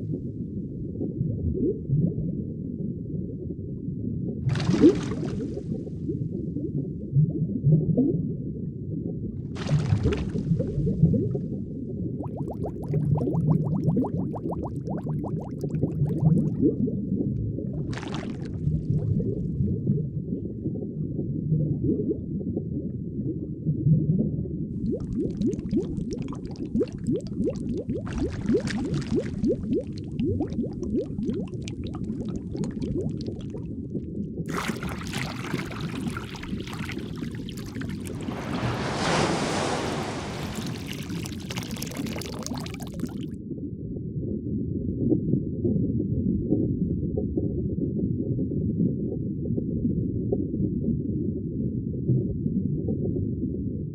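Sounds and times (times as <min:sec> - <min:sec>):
underwater bubbling and gurgling: 0:00.0 - 0:43.3
hissing wash of water: 0:34.5 - 0:43.2.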